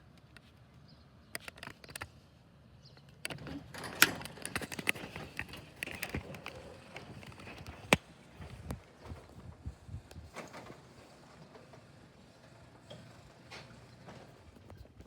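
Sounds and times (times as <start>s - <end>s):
handling clicks and knocks: 3.0s - 9.1s.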